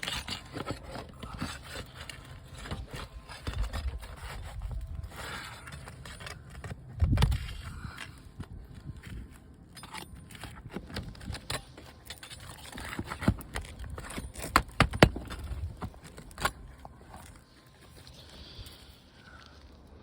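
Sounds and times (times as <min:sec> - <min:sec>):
shingles scraping and rustling: 0:00.0 - 0:19.0
shingles clicking and knocking: 0:09.0 - 0:17.4.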